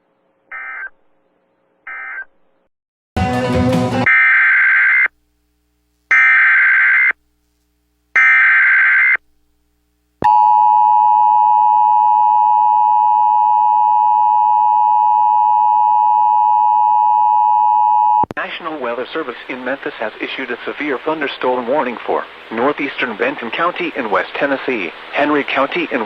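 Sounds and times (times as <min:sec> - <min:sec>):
screechy digital data tones: 0:06.1 - 0:07.2
harsh static: 0:18.3 - 0:26.0.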